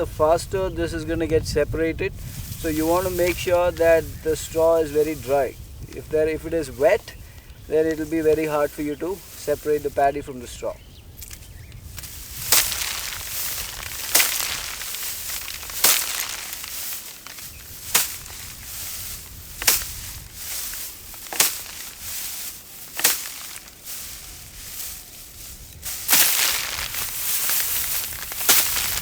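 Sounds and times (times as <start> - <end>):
straw rustling and falling grain: 0.0 - 29.0
straw bundle whacks: 11.3 - 25.1, 25.8 - 29.0.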